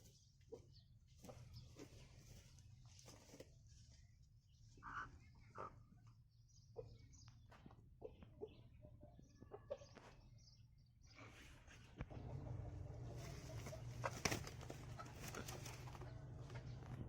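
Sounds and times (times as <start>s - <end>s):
chickens clucking: 4.7s - 10.3s, 11.8s - 16.9s
low steady hum: 12.0s - 17.0s.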